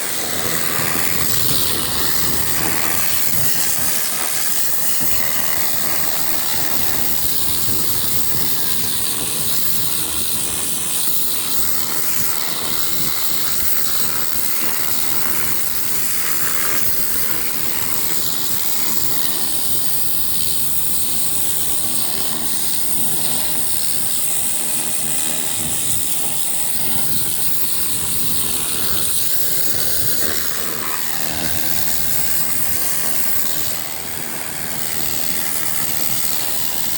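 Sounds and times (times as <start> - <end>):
pressure washer motor drone: 0.0 - 36.9.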